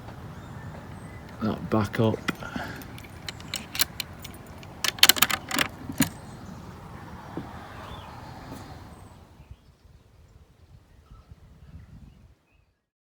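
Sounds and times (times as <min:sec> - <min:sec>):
faint outdoor background: 0:00.0 - 0:13.0
small door clicking shut: 0:02.2 - 0:06.2.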